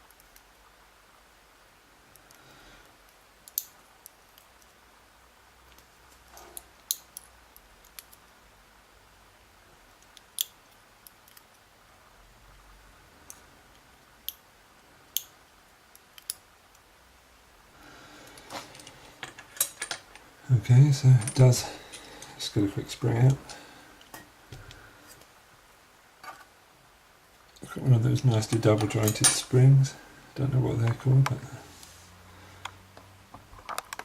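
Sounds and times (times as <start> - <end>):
small metal pins clicking: 3.4 - 4.7, 5.7 - 8.3, 10.0 - 11.6, 15.9 - 16.8.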